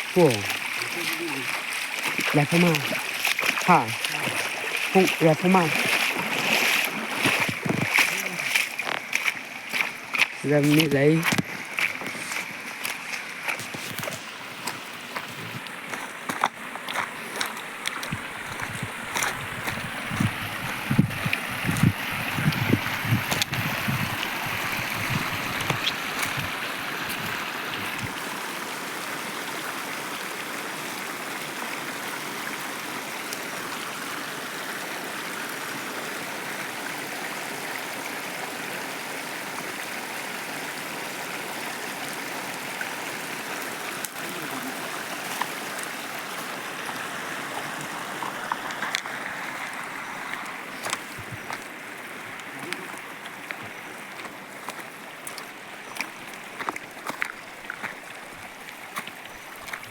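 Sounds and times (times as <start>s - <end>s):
stream water running: 0.0s - 59.9s
low thumps and knocks: 7.3s - 7.9s, 18.0s - 28.1s.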